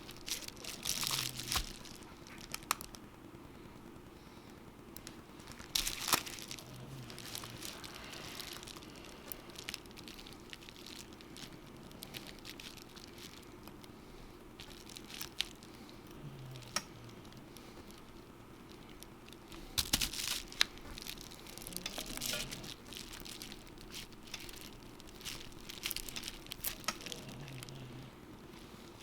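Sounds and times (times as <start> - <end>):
low room hum: 0.0 - 29.0
hand tools clicking and scraping: 19.4 - 27.9.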